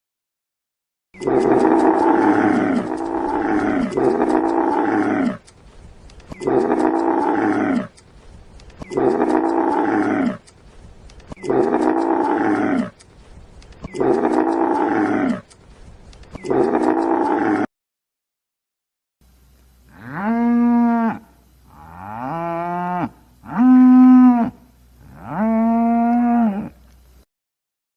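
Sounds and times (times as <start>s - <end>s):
tiger roaring: 1.2s - 5.5s.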